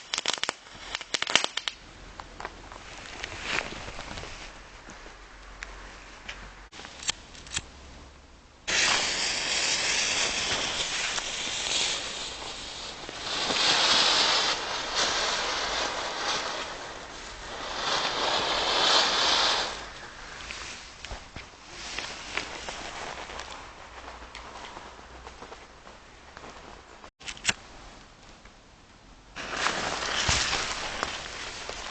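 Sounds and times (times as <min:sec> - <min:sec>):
firework hissing: 0:00.0 - 0:01.8, 0:08.7 - 0:24.3, 0:29.4 - 0:31.9
sharp crackles: 0:00.0 - 0:07.7, 0:08.7 - 0:28.6, 0:29.4 - 0:31.9.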